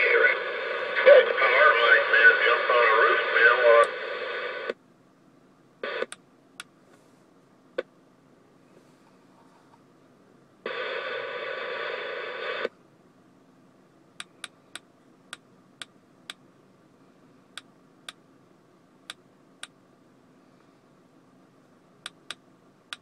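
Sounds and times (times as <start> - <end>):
radio static burst: 0.0 - 4.8, 5.8 - 6.1, 10.7 - 12.7.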